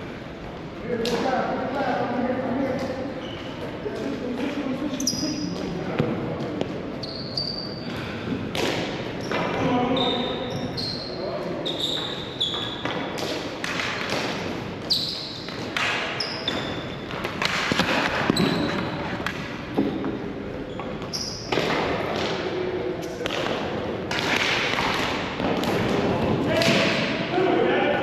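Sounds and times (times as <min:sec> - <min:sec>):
sneakers squeaking on floor: 0:02.7 - 0:23.2.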